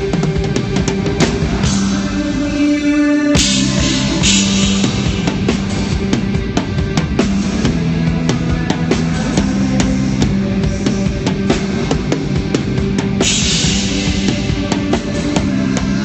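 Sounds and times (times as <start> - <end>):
live rock band playing: 0.0 - 16.0
drum kit beat: 3.4 - 16.0.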